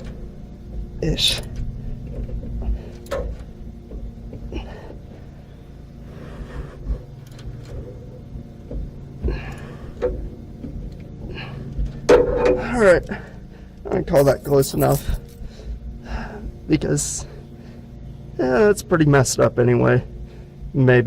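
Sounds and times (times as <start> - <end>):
steady low hum: 0.0 - 21.0
tool clicking and scraping on bolt: 14.2 - 15.4.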